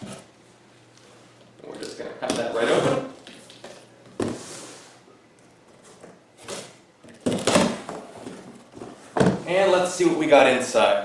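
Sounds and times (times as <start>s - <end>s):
cardboard scraping and rustling: 5.8s - 9.4s.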